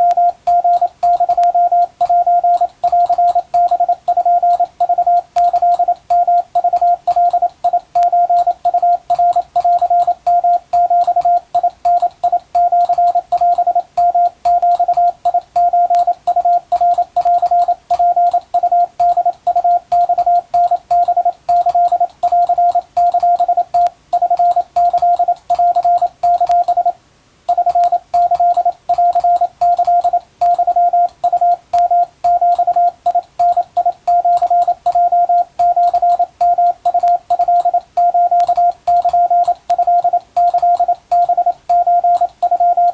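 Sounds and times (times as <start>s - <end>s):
morse code beeps: 0.0s - 42.9s.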